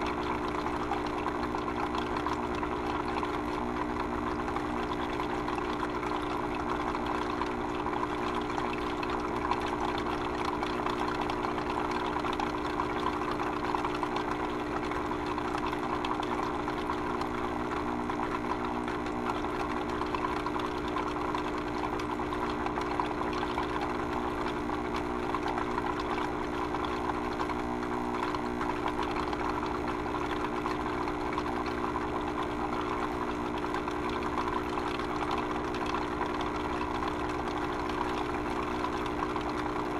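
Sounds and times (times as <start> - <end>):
constant low hum: 0.0 - 39.9
liquid running: 0.0 - 39.9.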